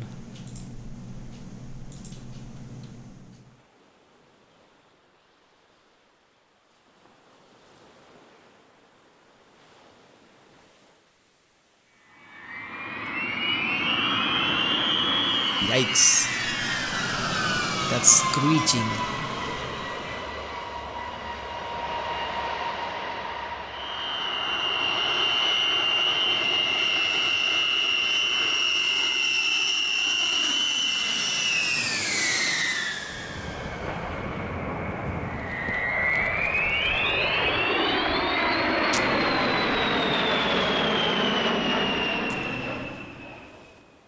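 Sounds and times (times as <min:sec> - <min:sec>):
jet aircraft whine: 0:00.0 - 0:03.5, 0:12.3 - 0:28.7, 0:31.3 - 0:43.6.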